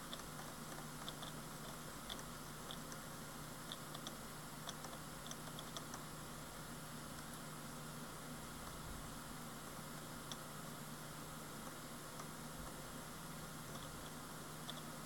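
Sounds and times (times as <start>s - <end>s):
hard drive heads clicking: 0.0s - 3.0s, 13.7s - 14.9s
hard drive humming: 0.0s - 15.0s.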